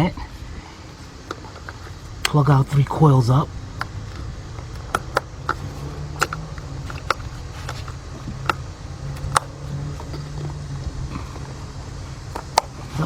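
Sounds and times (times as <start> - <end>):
steady low hum: 0.0 - 13.0
plastic connectors clicking: 3.8 - 10.9.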